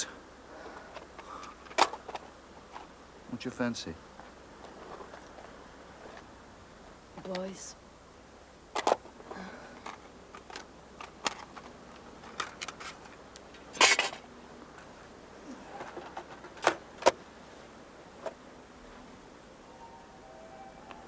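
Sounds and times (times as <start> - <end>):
small clicks and knocks of objects: 9.7 - 14.9.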